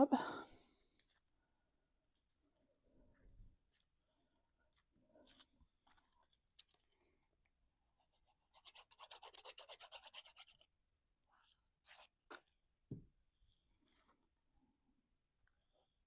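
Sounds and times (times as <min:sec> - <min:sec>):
scratching on cardstock: 0:08.0 - 0:10.7.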